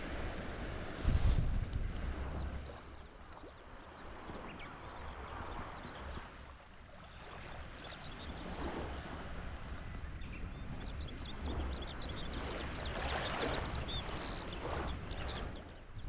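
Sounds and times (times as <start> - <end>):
sea water washing on shore: 0.0 - 16.0
wind rumbling on microphone: 0.0 - 16.0.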